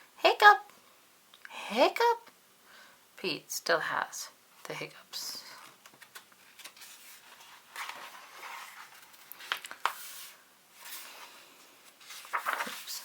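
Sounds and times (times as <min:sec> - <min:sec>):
paper rustling: 0:05.6 - 0:13.0.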